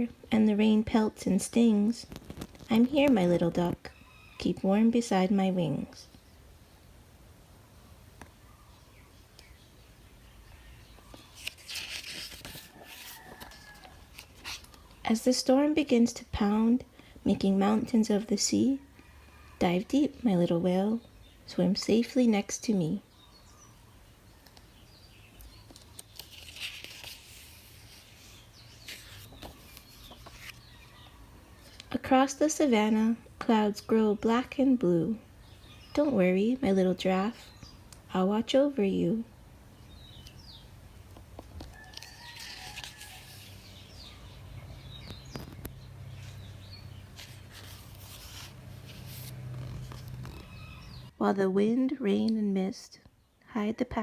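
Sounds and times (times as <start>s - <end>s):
faint bird chirps: 3.9s - 4.6s
paper page turning: 11.1s - 14.8s, 25.7s - 30.8s, 41.6s - 43.7s, 47.1s - 50.8s.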